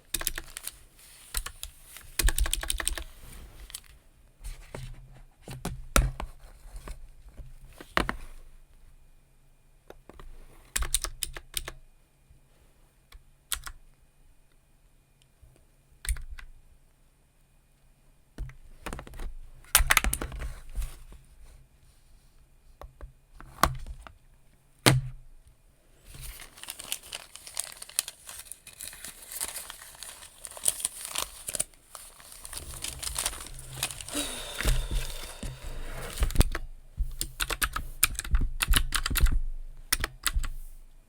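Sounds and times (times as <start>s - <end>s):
paper crinkling: 0.2s - 4.0s, 26.1s - 36.4s.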